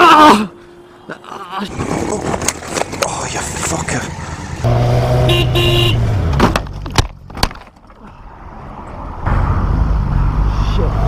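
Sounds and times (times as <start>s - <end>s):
vehicle horn blaring: 5.1s - 6.2s.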